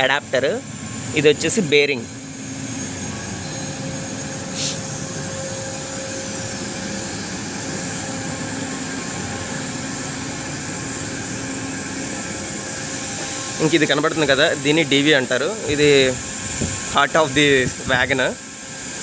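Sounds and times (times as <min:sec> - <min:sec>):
machinery droning: 0:00.0 - 0:19.0
hiss: 0:04.3 - 0:19.0.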